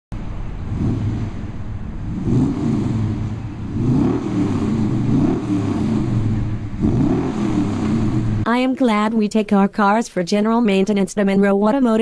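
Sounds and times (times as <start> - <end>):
car engine running: 0.1 - 9.2.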